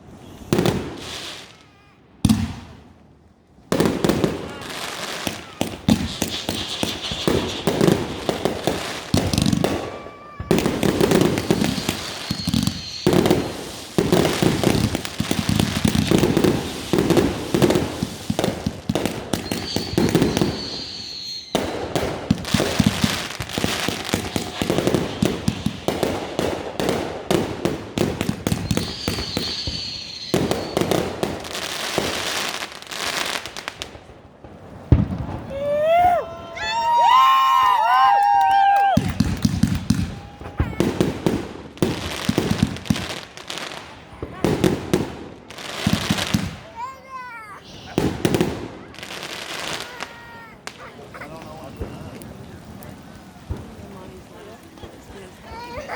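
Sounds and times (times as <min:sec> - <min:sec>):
firework whistles: 0:00.0 - 0:02.6, 0:04.3 - 0:26.1, 0:28.3 - 0:33.7, 0:47.6 - 0:52.9
fireworks crackling and banging: 0:00.0 - 0:55.9.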